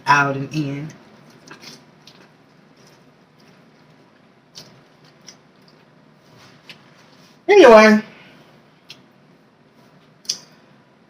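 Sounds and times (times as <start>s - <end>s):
squishy sounds of food eaten: 1.0s - 7.4s.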